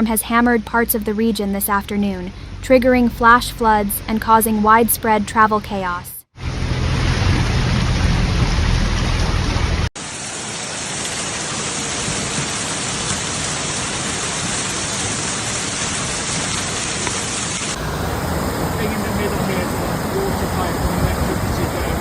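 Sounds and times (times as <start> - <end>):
deep rumble: 0.0 - 9.9, 17.7 - 22.0
heavy rain pouring: 6.4 - 22.0.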